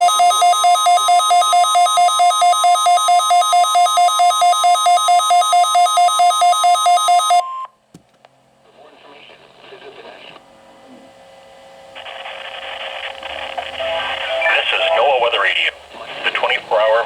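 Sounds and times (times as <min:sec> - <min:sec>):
pulsing electronic beep: 0:00.0 - 0:07.6.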